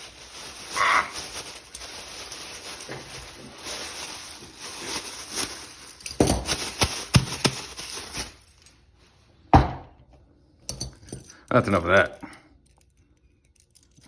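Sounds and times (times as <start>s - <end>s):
handcuffs rattling: 10.7s - 14.0s.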